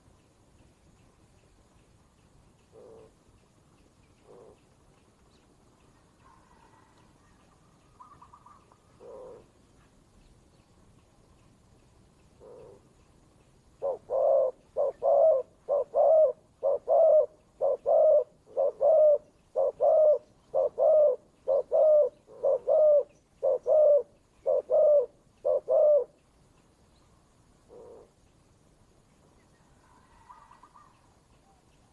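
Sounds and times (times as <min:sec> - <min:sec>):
dove cooing: 0:02.7 - 0:03.1, 0:04.2 - 0:04.6, 0:08.0 - 0:09.5, 0:12.4 - 0:12.9, 0:13.8 - 0:26.2, 0:27.7 - 0:28.1.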